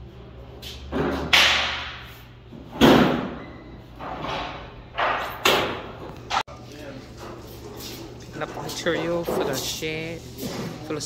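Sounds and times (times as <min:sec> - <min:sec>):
loud bangs and thuds: 0:02.7 - 0:03.4.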